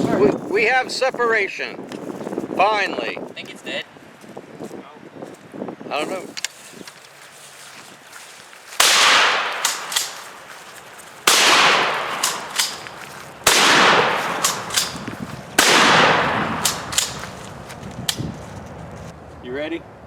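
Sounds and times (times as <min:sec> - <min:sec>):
shotgun shots: 0:08.8 - 0:10.5, 0:11.2 - 0:17.4
short sharp cracks: 0:08.8 - 0:18.2.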